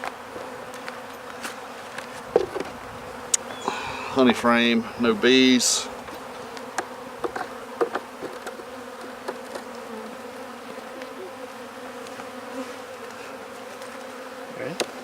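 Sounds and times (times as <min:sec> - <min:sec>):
bees buzzing: 0:00.0 - 0:15.0
wooden frames clicking and knocking: 0:06.7 - 0:09.7.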